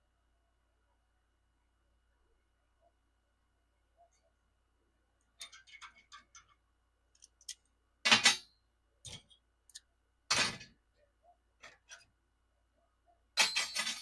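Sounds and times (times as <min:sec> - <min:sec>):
metal parts clicking: 0:05.4 - 0:07.6.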